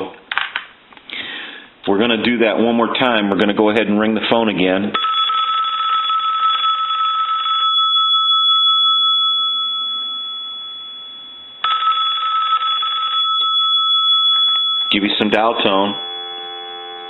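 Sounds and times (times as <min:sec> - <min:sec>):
telephone bell ringing: 0:05.0 - 0:17.0.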